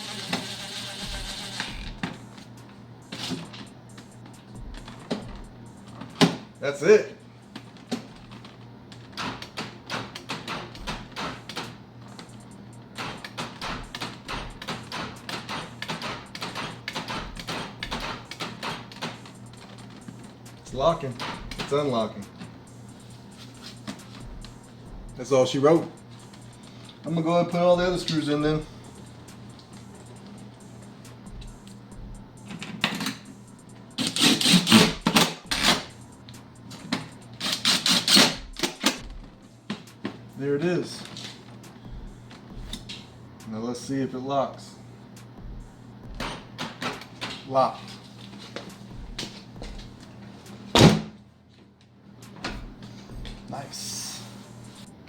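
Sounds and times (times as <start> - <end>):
cordless impact driver running: 0.0 - 2.0, 34.0 - 35.9, 37.4 - 38.9.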